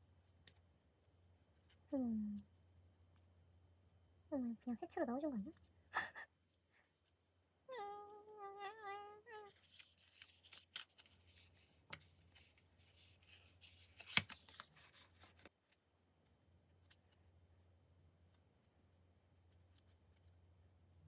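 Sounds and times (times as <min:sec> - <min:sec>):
person humming a tune: 0:01.9 - 0:02.4.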